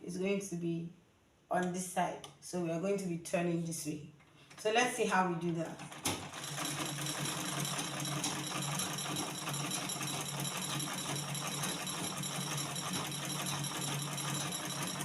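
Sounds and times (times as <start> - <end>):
sewing machine needle clatter: 5.8 - 15.0.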